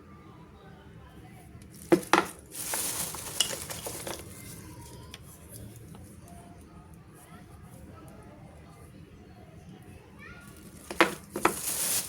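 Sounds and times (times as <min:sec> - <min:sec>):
scraping and rustling: 0:01.7 - 0:05.8, 0:10.4 - 0:12.0.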